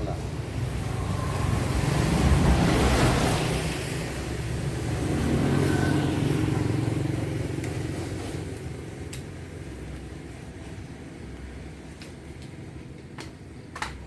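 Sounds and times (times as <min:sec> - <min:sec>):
passing vehicle engine rumble: 0:00.0 - 0:09.8.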